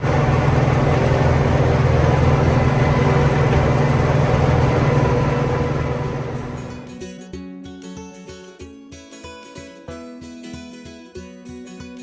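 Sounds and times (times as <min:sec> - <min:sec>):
tractor engine droning: 0:00.0 - 0:07.0.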